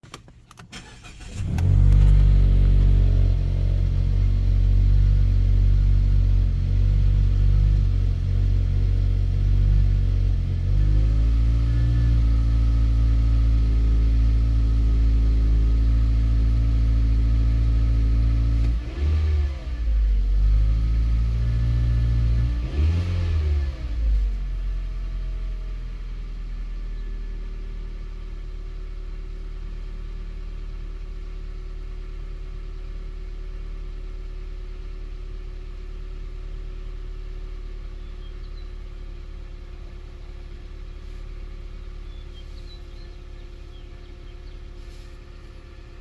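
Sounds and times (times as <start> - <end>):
car starter cranking: 0.0 - 3.3
car engine idling: 0.0 - 18.6, 24.1 - 46.0.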